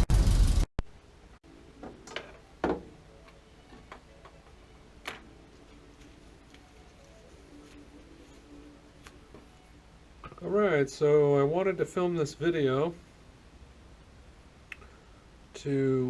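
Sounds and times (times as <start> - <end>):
loud sound cut off: 0.0 - 0.7
faint steady hum: 0.9 - 16.0.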